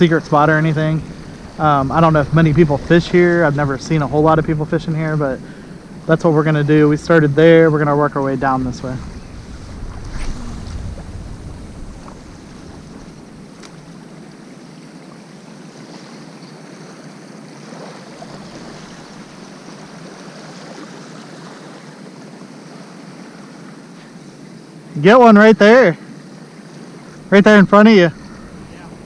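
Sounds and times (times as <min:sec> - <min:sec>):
wind rumbling on microphone: 0:00.0 - 0:14.4, 0:27.9 - 0:29.0
waves washing on a beach: 0:00.0 - 0:25.3.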